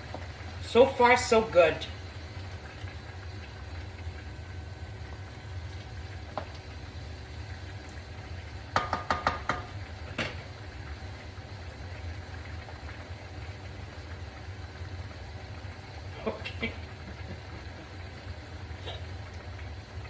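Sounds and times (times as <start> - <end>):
utensil clinking on pan: 8.8 - 9.7.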